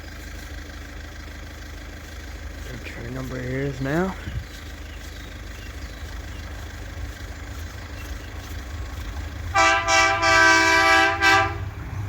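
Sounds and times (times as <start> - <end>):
low rumble: 0.0 - 12.0
train horn tooting: 9.5 - 11.8.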